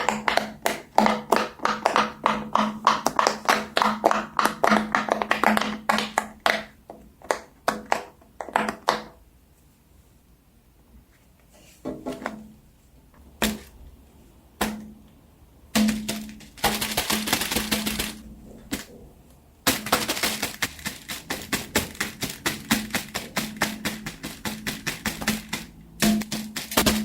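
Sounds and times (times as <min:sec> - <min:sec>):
rustling: 0:15.8 - 0:27.0.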